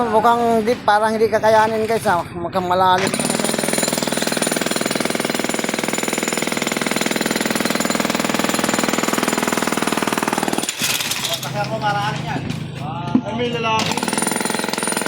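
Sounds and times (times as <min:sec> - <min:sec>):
jackhammer hammering: 0:03.0 - 0:12.2, 0:13.8 - 0:15.0.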